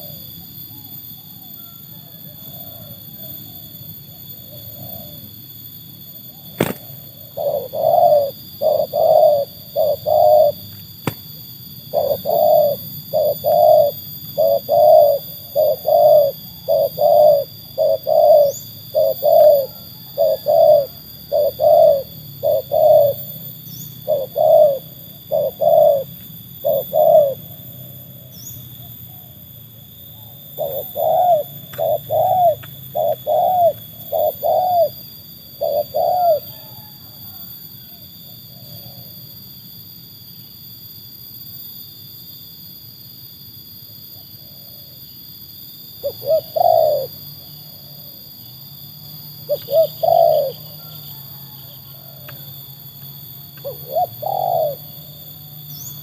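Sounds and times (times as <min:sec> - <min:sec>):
dove cooing: 0:06.3 - 0:39.2, 0:46.0 - 0:56.0.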